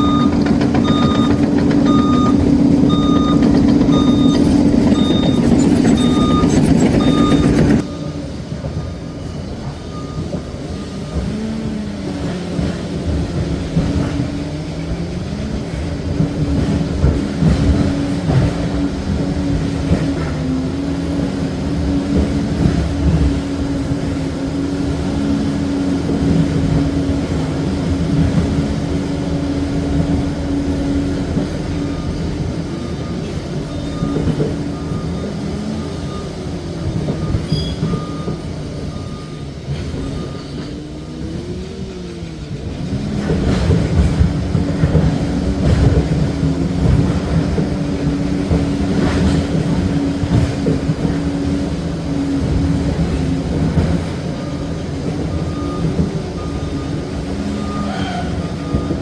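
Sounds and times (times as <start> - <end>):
machine clatter: 0.0 - 7.9
diesel engine running: 0.0 - 59.0.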